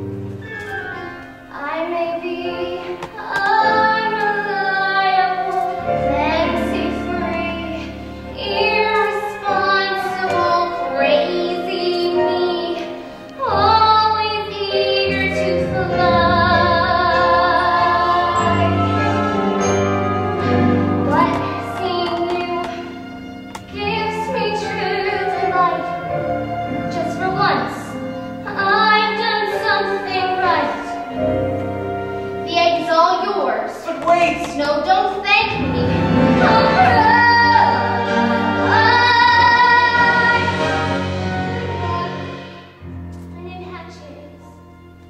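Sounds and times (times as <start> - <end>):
instrumental accompaniment: 0.0 - 45.0
young female voice singing: 1.5 - 18.9, 23.7 - 26.0, 32.5 - 40.9.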